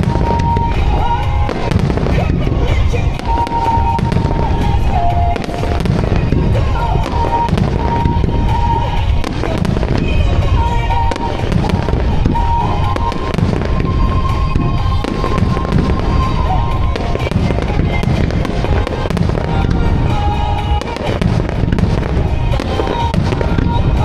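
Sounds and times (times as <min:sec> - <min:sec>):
firework shells booming and crackling: 0:00.0 - 0:24.0
pop music over loudspeakers: 0:00.0 - 0:24.0.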